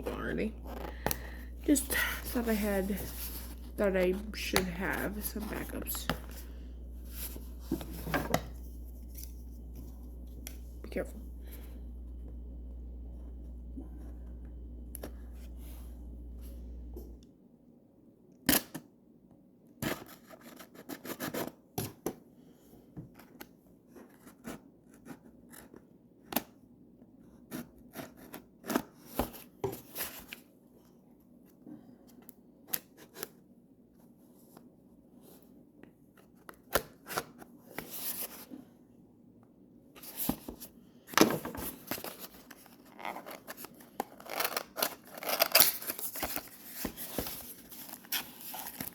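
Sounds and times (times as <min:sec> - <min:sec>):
cardboard and plastic rustling: 0:00.0 - 0:11.1, 0:40.0 - 0:48.9
low steady hum: 0:00.0 - 0:18.3
scissors snipping packaging: 0:41.9 - 0:48.9.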